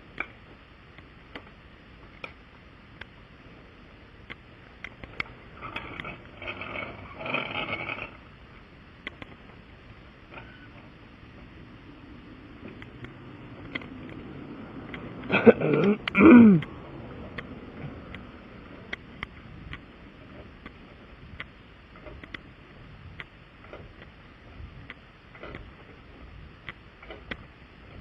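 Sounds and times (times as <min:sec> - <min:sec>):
vehicle hum on road: 0:00.0 - 0:28.0
person clearing throat: 0:15.3 - 0:16.7.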